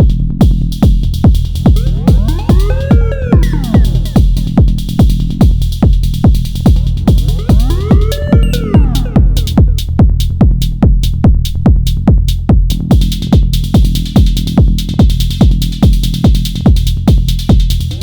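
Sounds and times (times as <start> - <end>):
low bass: 0.0 - 13.0
techno kick drum: 0.0 - 18.0
ticking hi-hats: 0.0 - 18.0.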